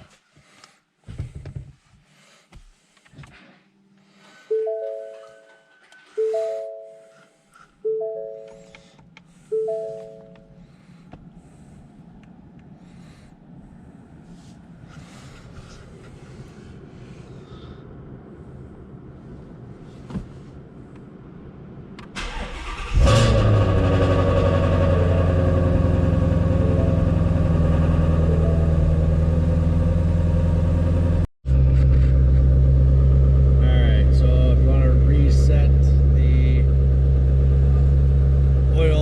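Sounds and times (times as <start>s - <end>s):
car engine starting and idling: 3.0s - 39.0s.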